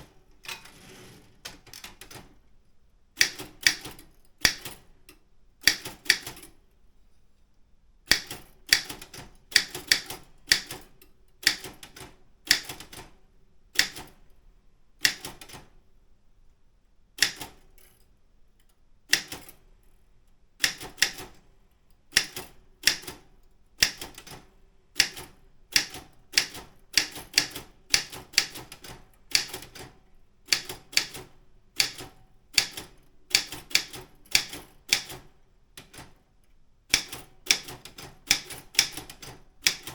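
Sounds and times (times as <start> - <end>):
typewriter key strikes: 17.2 - 17.7, 30.5 - 36.1, 36.9 - 39.9.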